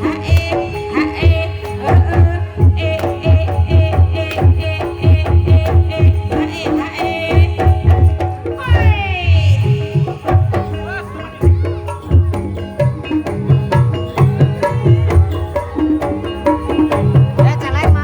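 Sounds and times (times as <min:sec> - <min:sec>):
hand drums quick rhythm: 0:00.1 - 0:18.0
wavering high melody: 0:08.5 - 0:18.0
metallic gamelan keys ringing: 0:09.6 - 0:18.0.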